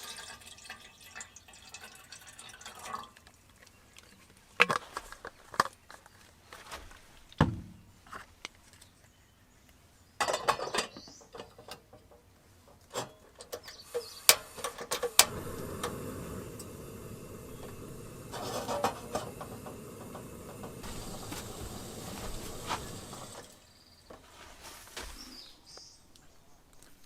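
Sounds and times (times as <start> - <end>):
steady hiss: 13.7 - 23.6.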